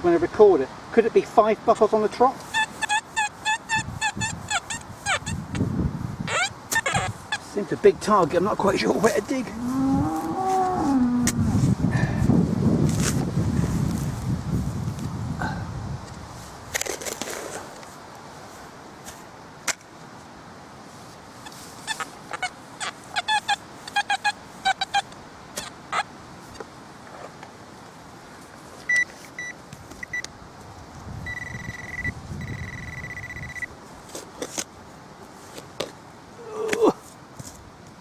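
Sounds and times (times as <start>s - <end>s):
metal detector chirps and beeps: 2.5s - 5.4s, 6.3s - 7.1s, 23.2s - 25.7s, 28.9s - 30.2s, 31.2s - 33.7s.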